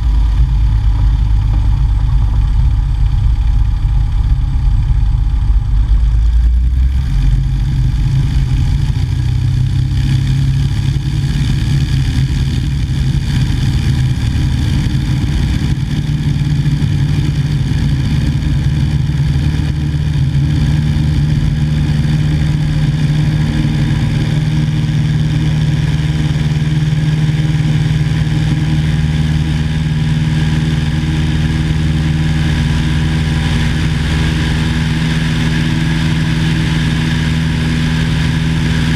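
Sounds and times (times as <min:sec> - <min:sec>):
aircraft engine running: 0:00.0 - 0:38.9.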